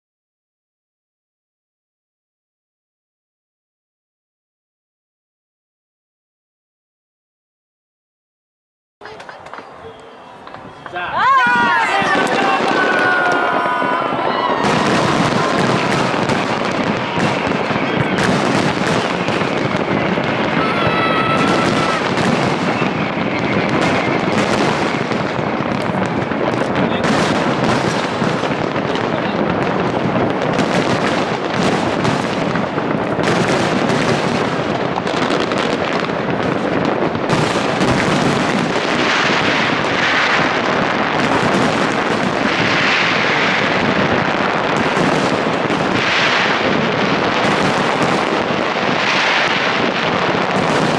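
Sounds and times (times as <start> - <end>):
firework whistle: 9.0 - 28.7
fireworks bangs and crackles: 9.0 - 50.9.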